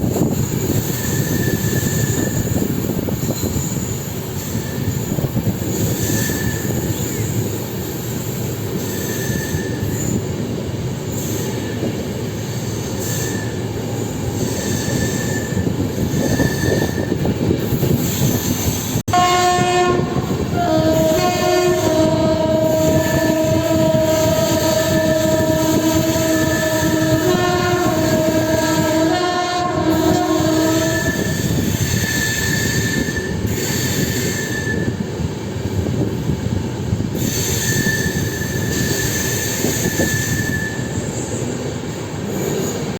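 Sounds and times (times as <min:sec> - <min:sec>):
train coaches running on track: 0:00.0 - 0:42.9
faint wheel squeal: 0:03.2 - 0:07.3, 0:08.8 - 0:10.2, 0:11.1 - 0:13.6, 0:14.4 - 0:17.2, 0:30.9 - 0:35.0, 0:37.2 - 0:41.4
train horn long blast: 0:19.1 - 0:31.5.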